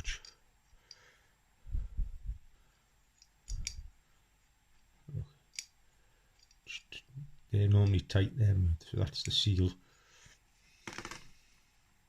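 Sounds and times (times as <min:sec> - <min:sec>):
small metal parts clicking: 0:03.1 - 0:03.9, 0:06.4 - 0:06.7.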